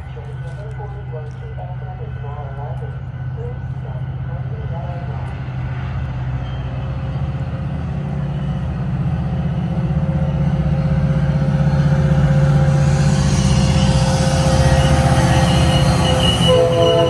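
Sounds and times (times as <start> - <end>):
diesel locomotive engine drone: 0.0 - 17.0.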